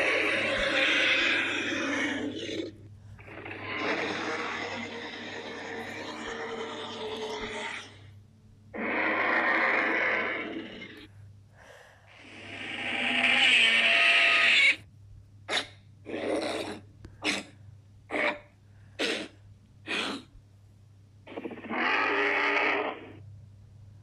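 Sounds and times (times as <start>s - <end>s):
monster vocal calls: 0.0s - 8.0s, 8.7s - 11.1s, 21.3s - 23.2s.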